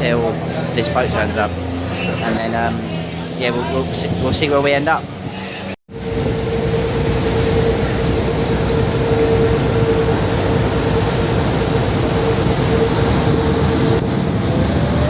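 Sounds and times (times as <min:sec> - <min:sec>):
boat engine running: 0:00.0 - 0:15.0
constant droning tone: 0:00.0 - 0:15.0
loud rushing noise: 0:00.0 - 0:15.0.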